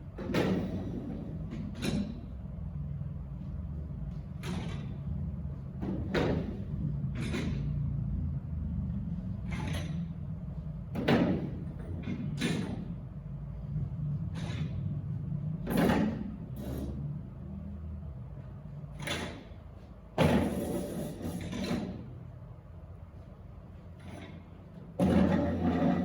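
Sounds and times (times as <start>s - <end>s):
chairs scraping and clunking: 20.2s - 22.2s, 24.0s - 26.0s.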